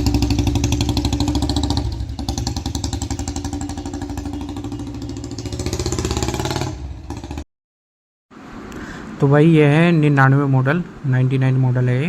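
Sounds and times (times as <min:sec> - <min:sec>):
motorcycle engine idling: 0:00.0 - 0:07.4.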